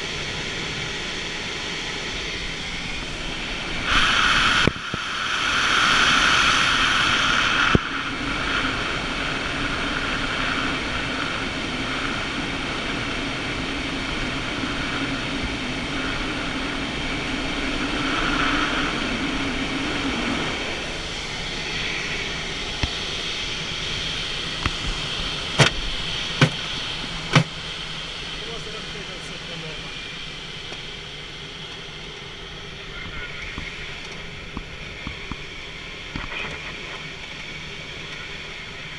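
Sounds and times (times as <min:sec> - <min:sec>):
air rushing over canopy: 0:02.6 - 0:12.0.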